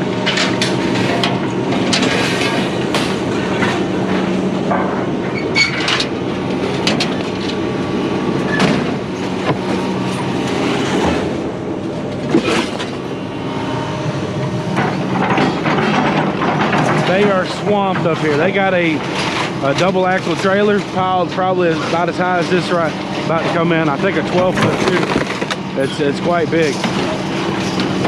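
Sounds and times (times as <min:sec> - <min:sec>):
vehicle engine humming: 0:00.0 - 0:19.9
metal rattles and clanks: 0:14.2 - 0:28.0.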